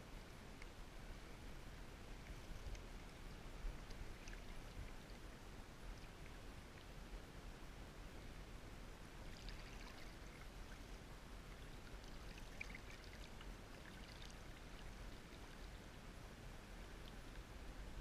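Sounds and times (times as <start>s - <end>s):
faint river water running: 0.0s - 18.0s
water splashes and trickles: 0.0s - 18.0s.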